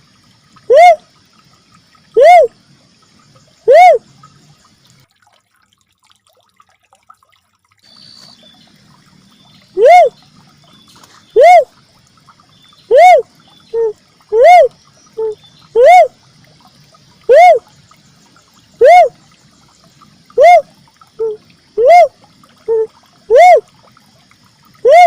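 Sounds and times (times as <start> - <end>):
dove hooting call: 0.7 - 1.0, 2.2 - 2.6, 3.6 - 4.0, 9.8 - 10.2, 11.4 - 11.8, 12.9 - 16.2, 17.2 - 17.7, 18.8 - 19.2, 20.3 - 23.7, 24.8 - 25.0.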